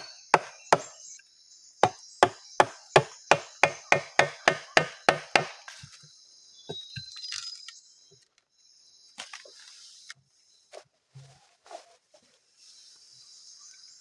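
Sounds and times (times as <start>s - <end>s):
blade chopping wood: 1.8s - 5.7s
insects chirring: 12.6s - 14.0s.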